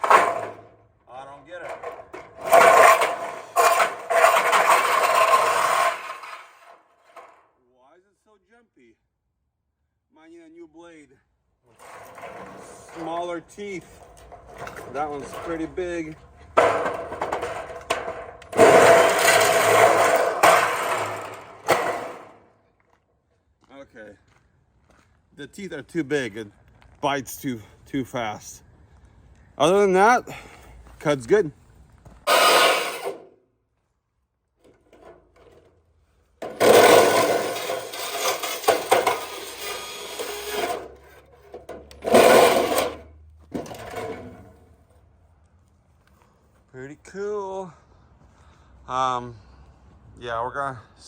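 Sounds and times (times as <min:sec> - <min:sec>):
band saw cutting metal: 0:01.8 - 0:06.8, 0:16.6 - 0:22.4, 0:32.3 - 0:33.2, 0:36.4 - 0:44.5.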